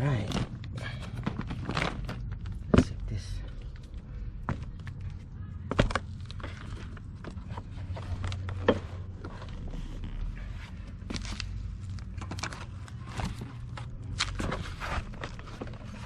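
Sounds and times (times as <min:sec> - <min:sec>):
steady low hum: 0:00.0 - 0:16.0
cardboard box scraping and rustling: 0:14.2 - 0:16.0.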